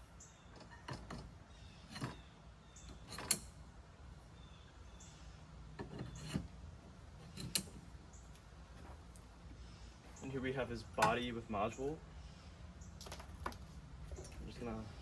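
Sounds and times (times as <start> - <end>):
metal poles knocking and scraping: 0.5 - 3.6, 5.7 - 6.6, 7.2 - 7.9.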